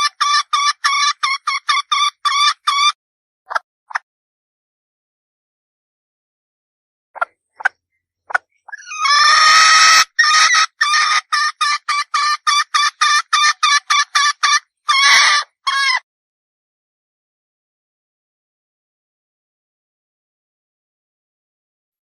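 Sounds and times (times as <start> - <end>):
hen calling and clucking: 0.0 - 4.0, 8.3 - 16.0.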